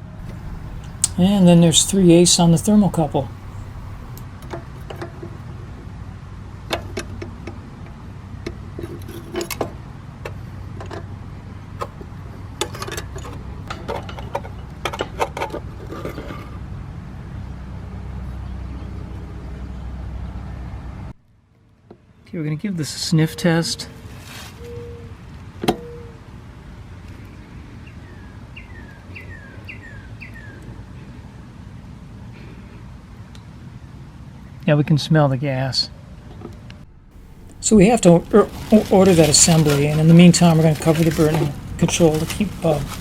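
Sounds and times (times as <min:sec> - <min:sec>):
steady low hum: 0:00.0 - 0:04.2, 0:36.8 - 0:43.0
outdoor background noise: 0:00.0 - 0:22.3, 0:35.4 - 0:43.0
bird chirp: 0:00.2 - 0:04.2.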